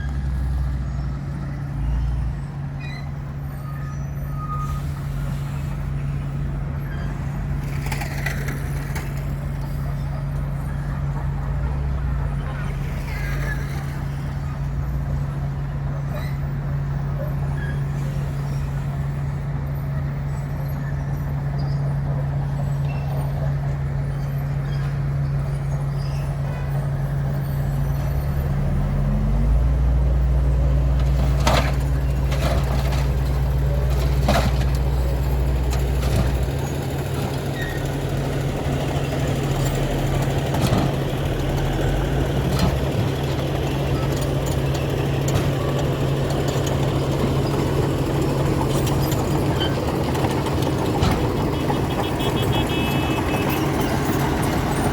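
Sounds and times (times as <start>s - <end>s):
heavy diesel engine revving: 25.4s - 54.9s.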